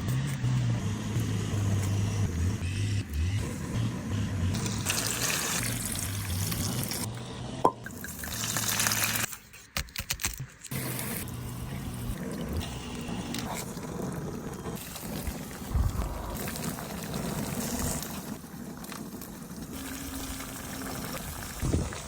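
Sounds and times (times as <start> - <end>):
liquid bubbling in a pot: 11.2 - 22.0.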